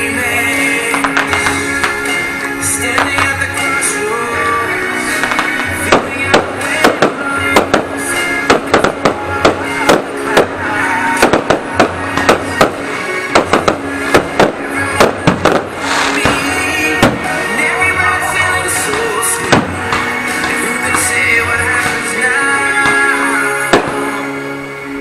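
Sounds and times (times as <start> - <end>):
music playing: 0.0 - 25.0
firework shells bursting: 0.9 - 3.9, 5.1 - 17.5.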